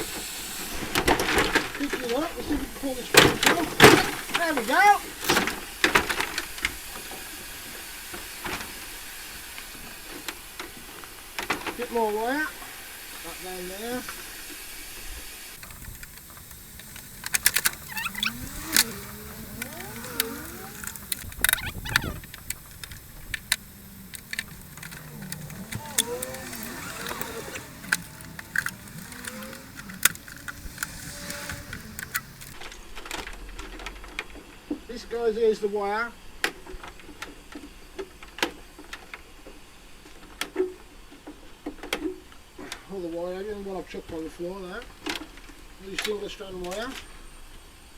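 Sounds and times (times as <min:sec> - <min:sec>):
sharp clicks of wire cutting: 0:15.6 - 0:32.6
wire dragging with squeaky creaks: 0:15.6 - 0:32.6.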